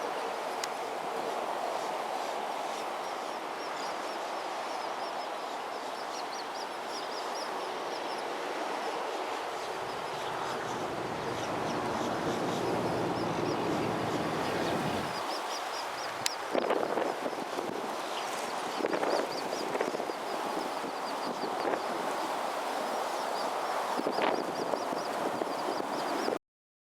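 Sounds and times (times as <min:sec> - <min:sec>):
surf: 0:00.0 - 0:26.4
storm wind: 0:07.6 - 0:26.4
small birds chirping: 0:09.6 - 0:16.7
low engine drone: 0:09.9 - 0:15.1.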